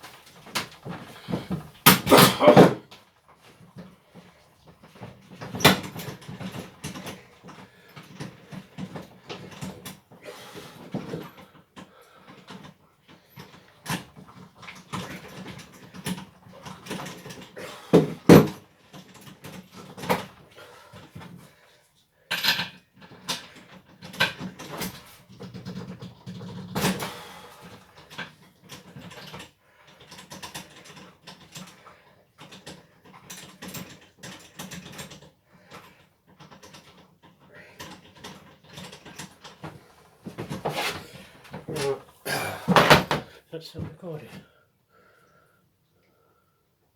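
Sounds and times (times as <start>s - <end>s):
tools knocking and rattling: 36.4s - 43.3s.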